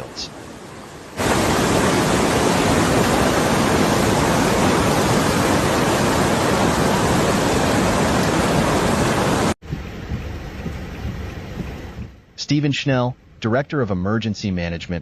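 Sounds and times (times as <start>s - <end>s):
fast-flowing water rushing: 0.0s - 12.0s.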